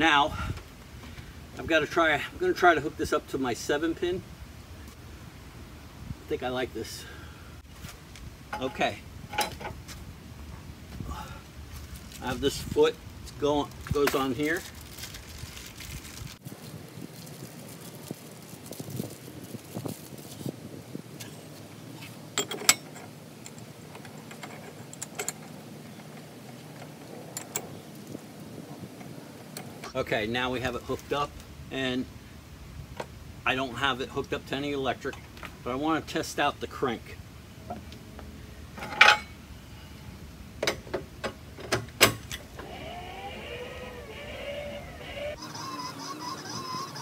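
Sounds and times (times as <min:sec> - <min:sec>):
metal parts clicking and knocking: 0:22.4 - 0:26.3
hand-cranked jack gearing whirring: 0:42.6 - 0:47.0.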